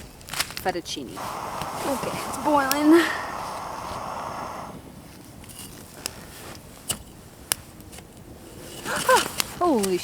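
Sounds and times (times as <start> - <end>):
campfire popping: 0.0 - 5.1
stove burner hissing: 0.9 - 5.0.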